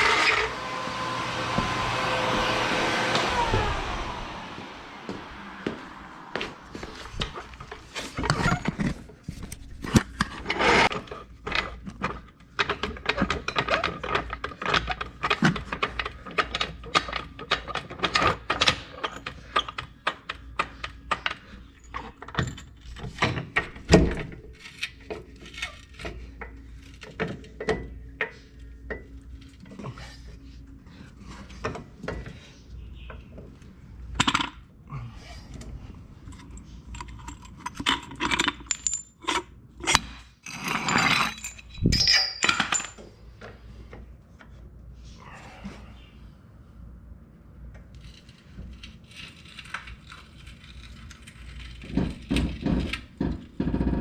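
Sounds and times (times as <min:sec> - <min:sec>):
metal tools clinking and knocking: 0:36.3 - 0:43.2.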